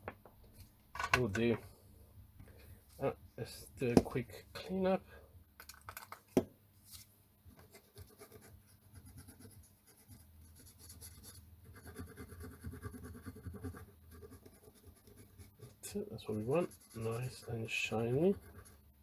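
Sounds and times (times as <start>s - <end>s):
scrubbing on a circuit board: 11.8s - 18.9s.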